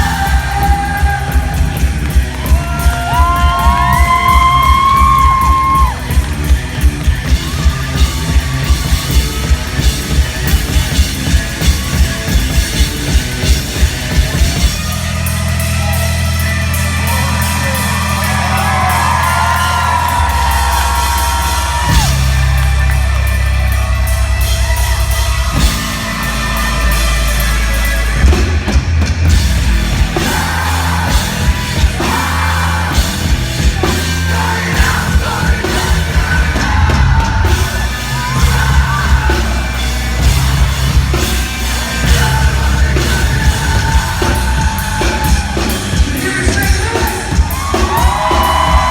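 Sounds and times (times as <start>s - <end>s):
heavy low guitar chords: 0.0s - 48.9s
live rock band: 0.0s - 48.9s
kick drum beats: 43.4s - 48.9s.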